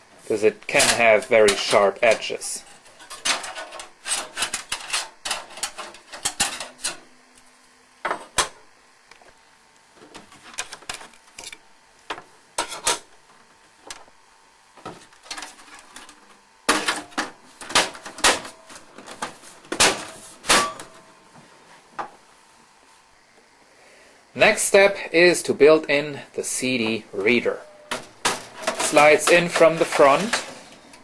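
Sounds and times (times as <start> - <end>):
sheet metal clicks and clatter: 3.0 - 7.0.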